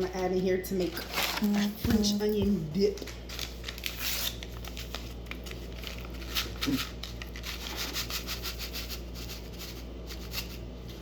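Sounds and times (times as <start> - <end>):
packet rustling and crackling: 0.9 - 8.1.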